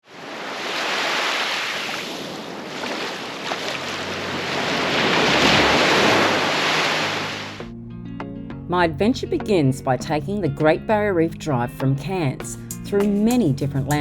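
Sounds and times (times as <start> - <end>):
ocean waves breaking on shore: 0.0 - 7.6.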